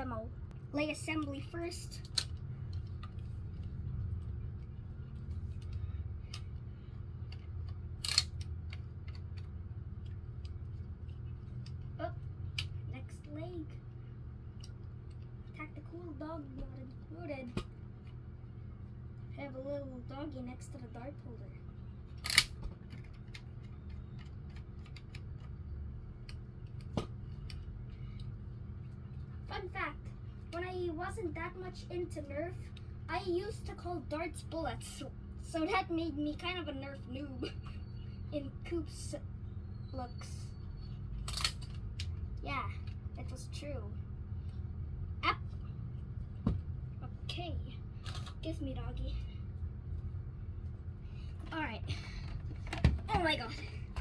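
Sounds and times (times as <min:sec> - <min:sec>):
steady low hum: 0:00.0 - 0:54.0
plastic parts clicking: 0:07.3 - 0:09.6.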